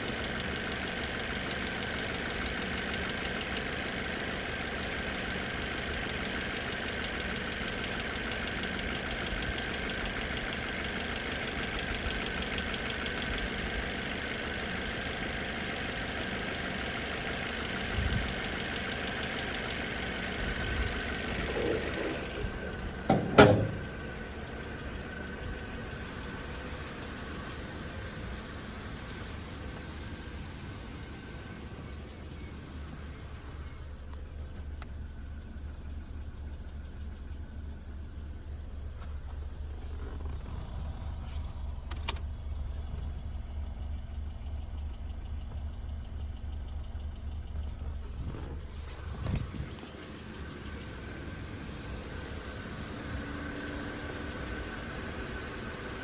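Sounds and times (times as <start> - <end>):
car engine running: 0.0 - 56.0
clicking from engine bay: 19.5 - 24.4, 39.0 - 43.2
sharp knocks: 21.5 - 24.0.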